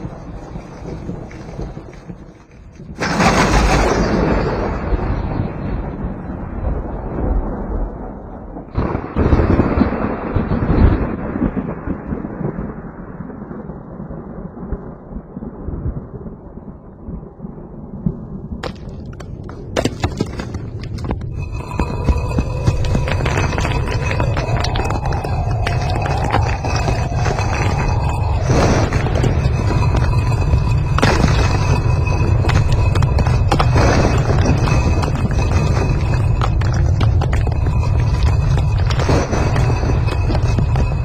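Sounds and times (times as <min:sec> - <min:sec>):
thunderclaps rolling into rumble: 0:00.0 - 0:41.0
sharp thunder cracks: 0:02.9 - 0:16.3, 0:26.8 - 0:36.6.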